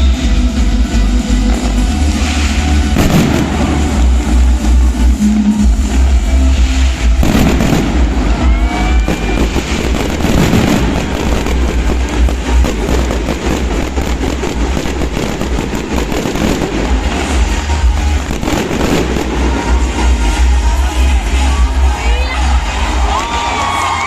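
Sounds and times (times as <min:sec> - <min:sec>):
heavy low rumble: 0:00.0 - 0:23.1
fireworks bangs and crackles: 0:00.0 - 0:24.0
firework whistling: 0:02.1 - 0:20.6.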